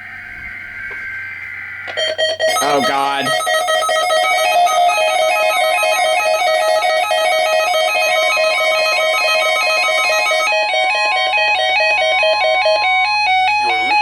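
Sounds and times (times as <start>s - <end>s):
steady warning tone: 0.0s - 10.5s
alternating two-pitch alarm beeps: 1.8s - 13.6s.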